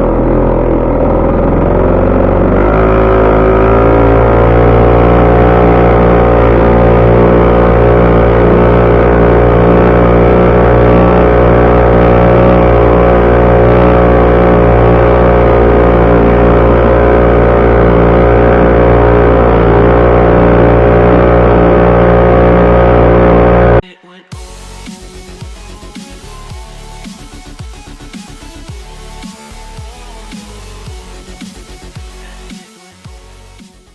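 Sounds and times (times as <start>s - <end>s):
outboard motor running: 0.0s - 23.8s.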